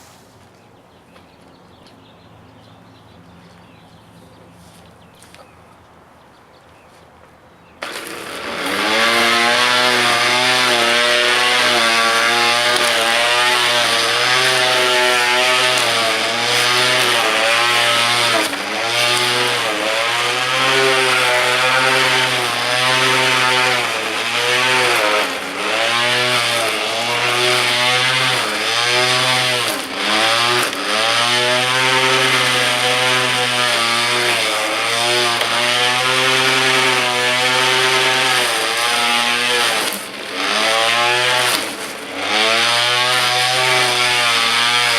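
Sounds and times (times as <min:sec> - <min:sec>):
electric string trimmer humming: 0:07.8 - 0:44.9.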